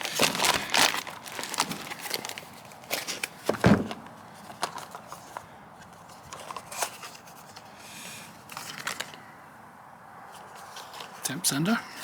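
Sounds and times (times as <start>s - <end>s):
packaging rustling: 0.0s - 5.1s
heavy thump: 3.5s - 4.1s.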